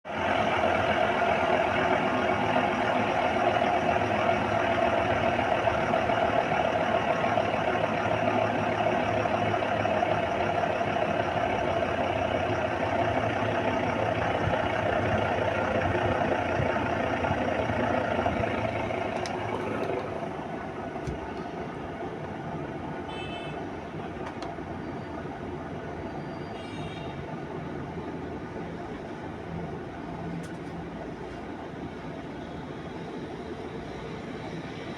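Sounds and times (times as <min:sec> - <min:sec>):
washing machine running: 0:14.2 - 0:21.4.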